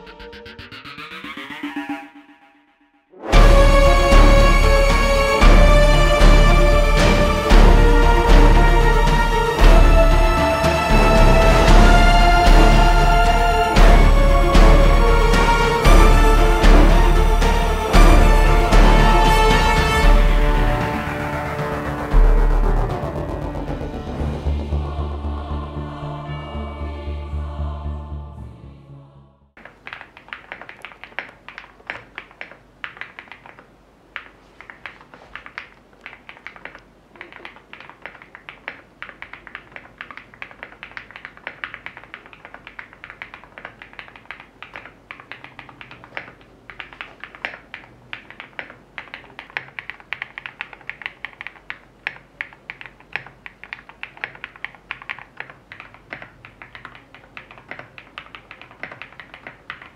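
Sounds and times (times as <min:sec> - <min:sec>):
background music: 0:00.0 - 0:29.6
mechanical keyboard typing: 0:29.6 - 0:59.9.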